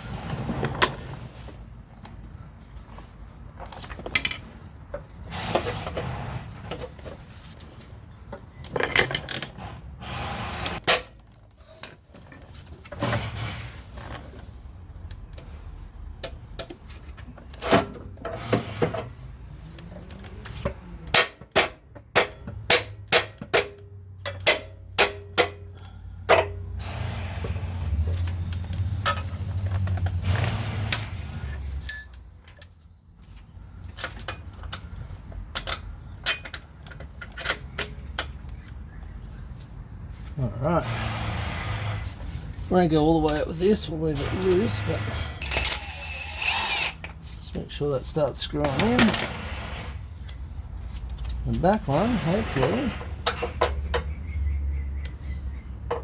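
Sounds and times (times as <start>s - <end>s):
tools clinking against metal: 30.9s - 32.8s, 45.4s - 47.2s.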